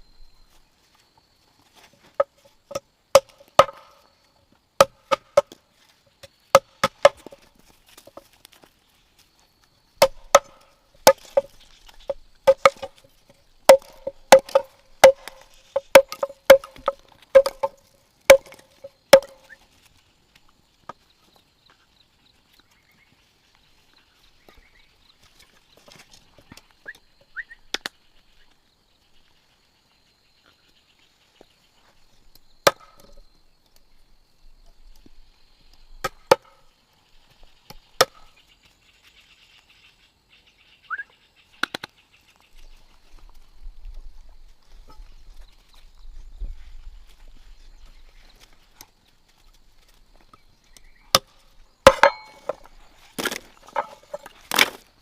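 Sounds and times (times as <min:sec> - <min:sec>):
blade chopping bamboo: 0:02.7 - 0:04.0, 0:04.8 - 0:05.6, 0:10.0 - 0:13.1, 0:13.7 - 0:19.5, 0:51.1 - 0:54.9.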